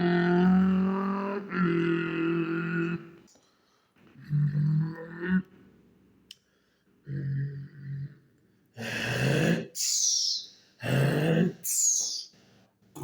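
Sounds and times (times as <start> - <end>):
man humming: 0.0 - 3.3.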